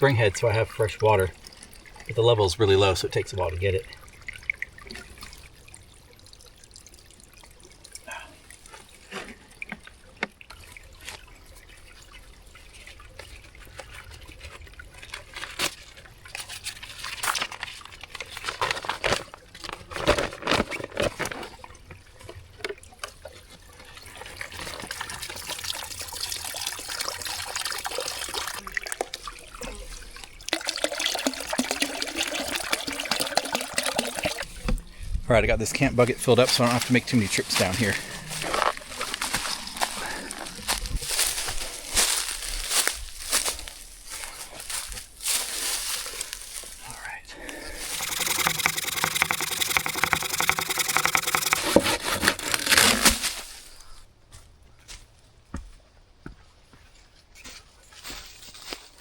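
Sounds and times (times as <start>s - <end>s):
faint water trickle: 0.0s - 18.7s, 21.7s - 48.2s
water running into bucket: 0.0s - 35.0s, 35.6s - 43.5s, 47.4s - 53.3s.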